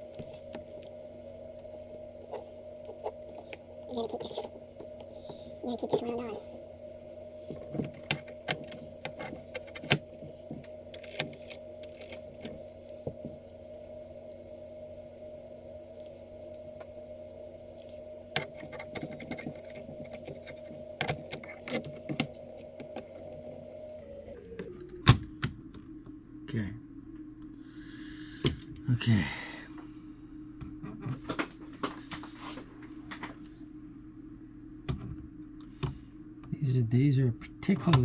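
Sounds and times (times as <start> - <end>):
hum sliding down in pitch: 22.3 - 26.3.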